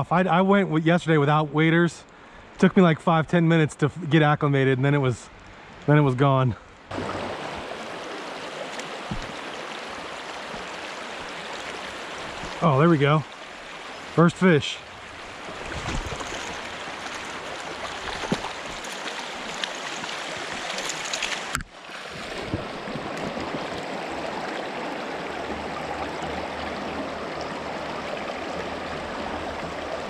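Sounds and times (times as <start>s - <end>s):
creek water rushing: 6.8s - 30.0s.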